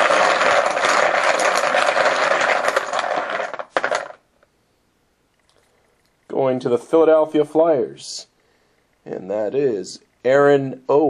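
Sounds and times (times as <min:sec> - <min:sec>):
poker chips rattling: 0:00.0 - 0:04.2.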